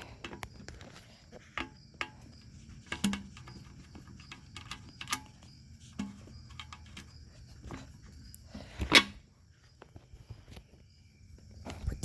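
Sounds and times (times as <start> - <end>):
tools and metal parts clicking: 1.6 - 7.6.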